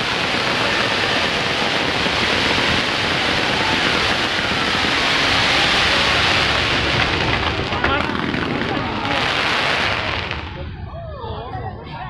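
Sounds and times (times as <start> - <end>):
fireworks rushing noise: 0.0 - 10.9.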